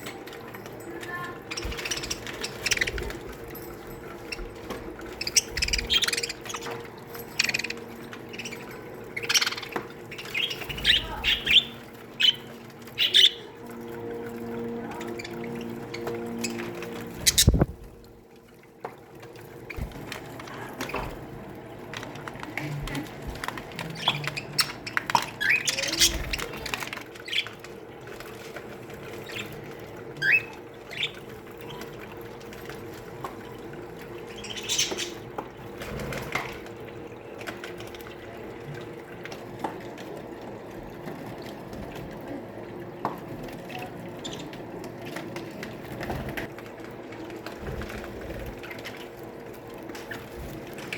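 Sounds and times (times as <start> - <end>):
budgerigars chirping and chattering: 1.4 - 3.3, 4.3 - 13.6, 15.0 - 17.6, 23.9 - 27.6, 29.1 - 31.9, 34.3 - 35.3.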